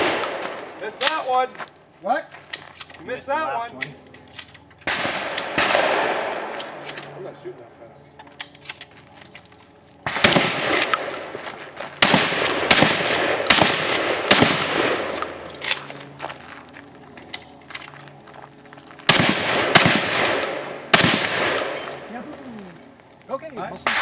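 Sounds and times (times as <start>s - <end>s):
gunshots echoing: 0.0s - 1.2s, 4.8s - 7.2s, 10.0s - 15.9s, 19.1s - 22.4s, 23.8s - 24.0s.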